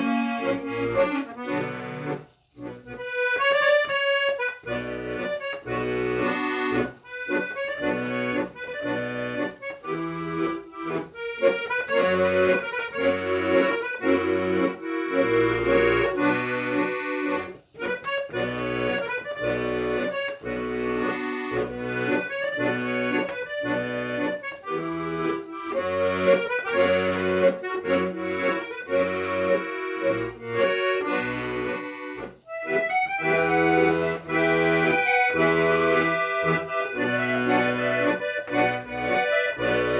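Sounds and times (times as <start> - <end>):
accordion music: 0.0 - 39.9.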